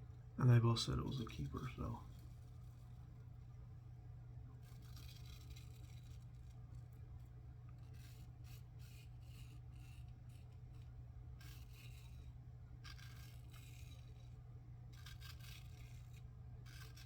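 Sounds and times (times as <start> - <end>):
steady low hum: 0.0 - 17.0
safety razor scraping stubble: 4.6 - 7.0, 7.7 - 17.0.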